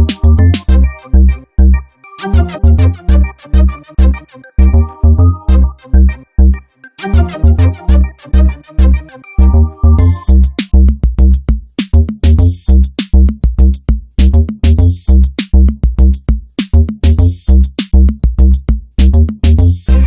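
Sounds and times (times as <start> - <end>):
drum-machine beat: 0.0 - 1.0, 2.2 - 4.7, 7.0 - 20.0
electronic music: 0.0 - 10.9, 19.6 - 20.0.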